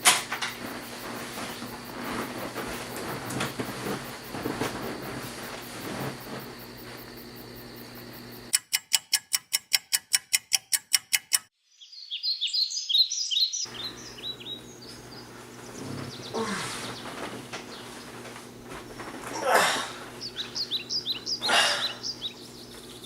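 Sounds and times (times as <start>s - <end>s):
steady hum: 0.0s - 8.5s, 13.7s - 23.0s
sharp even clicks: 8.5s - 11.5s
birds chirping: 11.7s - 23.0s.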